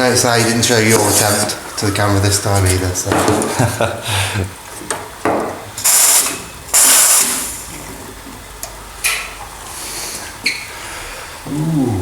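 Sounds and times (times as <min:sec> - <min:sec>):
espresso machine hissing: 0:05.8 - 0:07.7.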